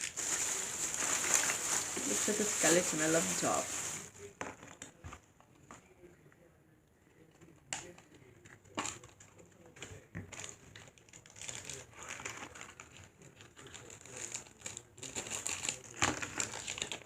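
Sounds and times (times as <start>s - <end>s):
plastic packaging crinkling: 0.0s - 4.8s, 8.7s - 17.0s.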